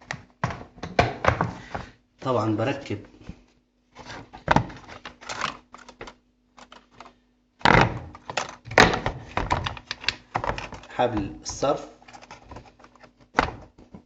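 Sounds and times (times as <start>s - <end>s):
plastic parts clicking and knocking: 0.0s - 1.6s, 4.3s - 11.3s, 12.0s - 14.0s.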